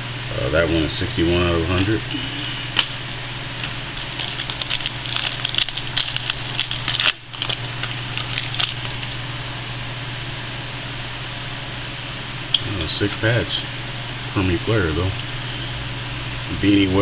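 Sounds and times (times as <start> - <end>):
steady low hum: 0.0 - 17.0
cards crackling and rustling: 4.0 - 9.2.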